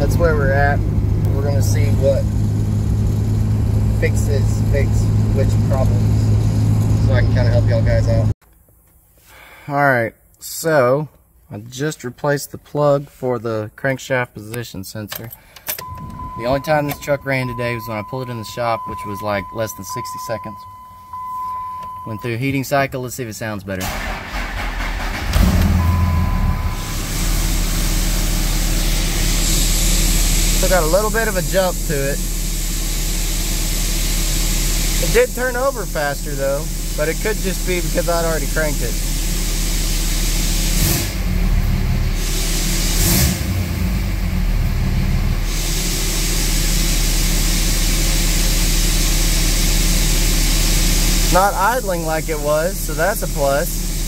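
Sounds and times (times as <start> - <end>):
diesel engine starting and idling: 0.0 - 8.3, 15.3 - 22.4, 23.7 - 54.0
short steady beep: 15.8 - 22.4, 25.8 - 27.0.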